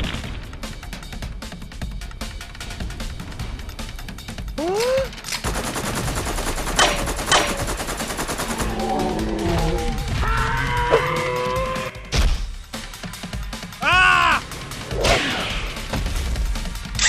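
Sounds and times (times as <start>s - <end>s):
heavy gunshots: 0.0s - 0.9s, 5.4s - 10.5s
rapid gunfire sound effects: 5.4s - 10.5s.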